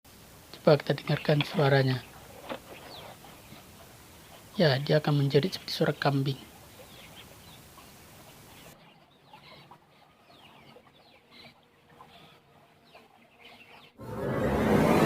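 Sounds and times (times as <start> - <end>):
loud rising whoosh: 14.0 - 15.0.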